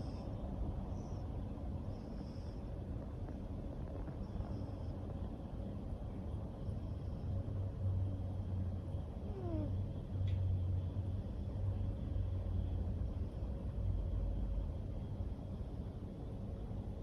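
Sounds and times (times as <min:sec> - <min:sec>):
cat snoring: 0:01.9 - 0:05.3, 0:09.2 - 0:09.8.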